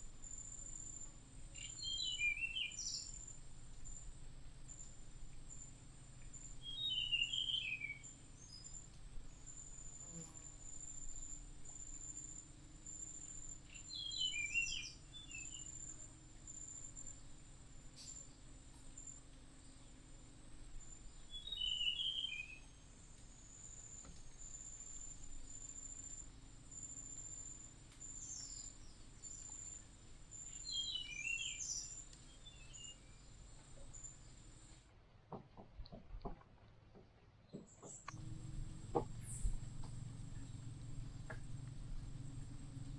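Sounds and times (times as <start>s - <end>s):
bird chirping: 0.2s - 4.1s, 4.7s - 17.2s, 20.8s - 34.8s, 37.8s - 42.9s
insect trilling: 38.1s - 42.9s.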